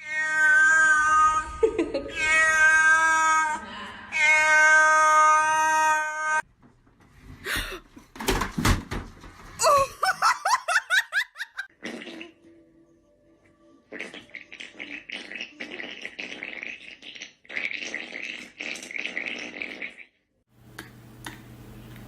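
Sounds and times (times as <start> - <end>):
cat yowling: 0.0 - 3.6, 4.2 - 6.4.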